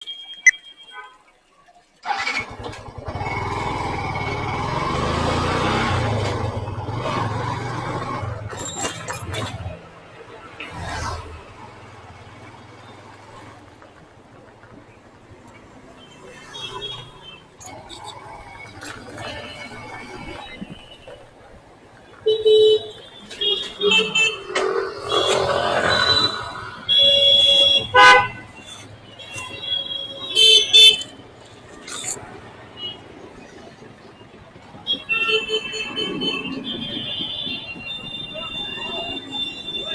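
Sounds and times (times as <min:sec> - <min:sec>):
road traffic: 0:00.0 - 0:39.9
vehicle horns honking: 0:22.3 - 0:31.2.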